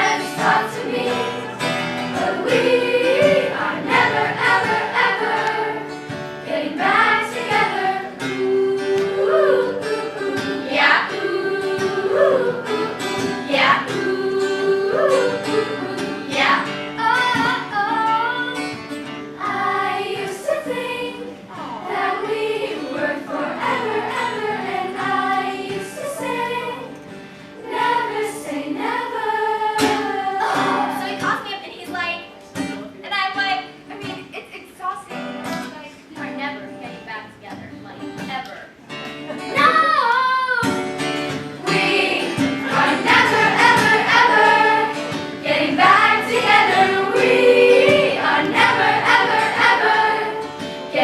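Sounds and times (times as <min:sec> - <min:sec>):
choir singing: 0:00.0 - 0:18.6, 0:19.4 - 0:27.0, 0:27.6 - 0:31.2, 0:41.6 - 0:51.0.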